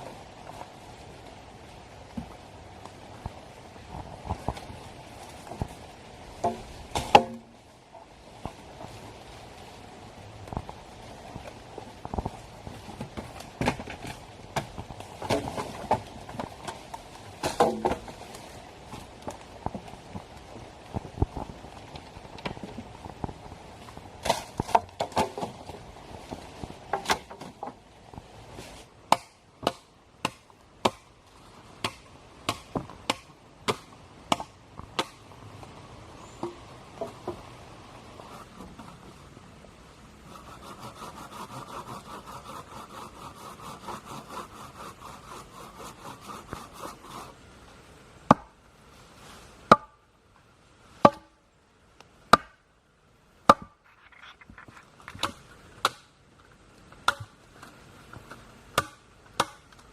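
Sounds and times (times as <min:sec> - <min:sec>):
blade chopping wood: 0:06.4 - 0:07.5, 0:17.4 - 0:18.1, 0:31.8 - 0:35.2, 0:51.0 - 0:51.3, 0:53.5 - 0:53.8, 0:55.1 - 0:56.1, 0:58.7 - 0:59.7
sawing strokes: 0:40.3 - 0:47.4.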